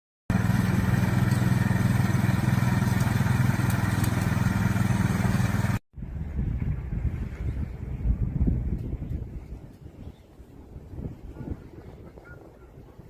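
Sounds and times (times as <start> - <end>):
engine running steadily: 0.3 - 5.8
wind rumble on microphone: 5.6 - 13.0.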